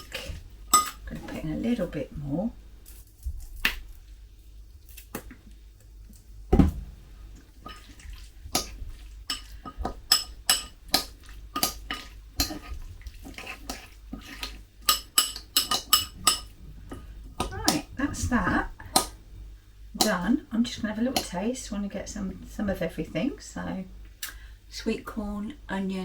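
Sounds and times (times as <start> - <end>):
utensil clinking against bowl: 0.0 - 1.2, 8.6 - 16.5.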